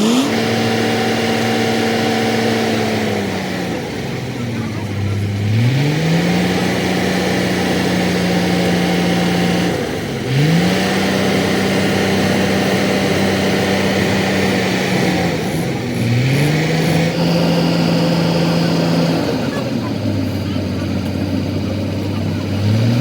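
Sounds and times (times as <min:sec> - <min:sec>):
engine revving: 0:00.0 - 0:23.0.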